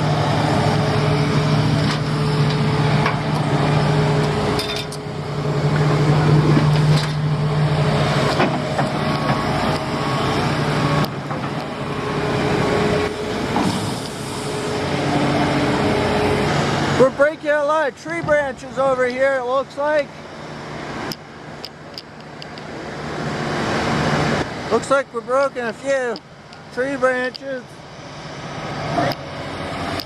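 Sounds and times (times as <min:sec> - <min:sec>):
heavy machinery engine running: 0:00.0 - 0:30.0.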